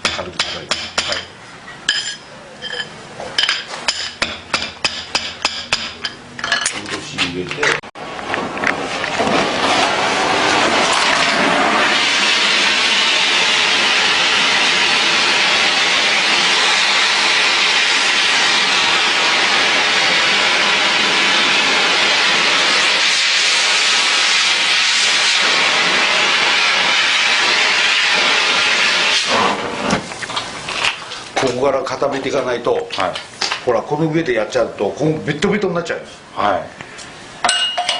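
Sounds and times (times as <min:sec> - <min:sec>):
torch flame hissing: 0:08.3 - 0:31.4.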